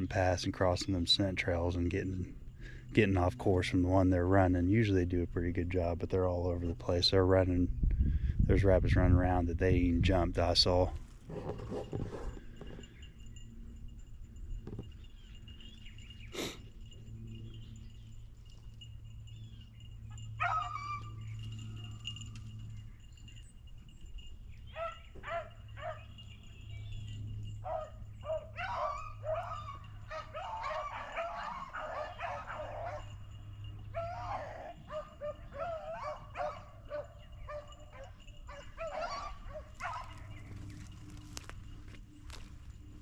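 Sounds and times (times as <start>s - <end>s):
dogs baying: 10.9s - 43.0s.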